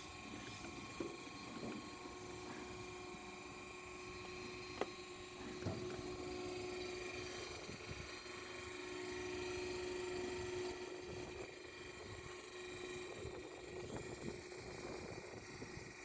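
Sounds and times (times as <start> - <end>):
band saw humming: 0.0 - 15.6.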